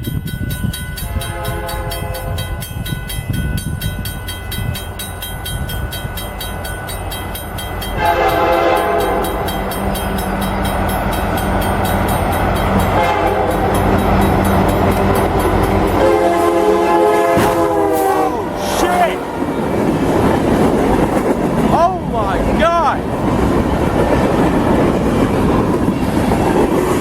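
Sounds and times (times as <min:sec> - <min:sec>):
railroad crossing bells ringing: 0:00.0 - 0:26.8
train rumble: 0:00.0 - 0:27.0
train horn blasts: 0:01.0 - 0:02.6, 0:08.0 - 0:09.9, 0:12.7 - 0:19.8.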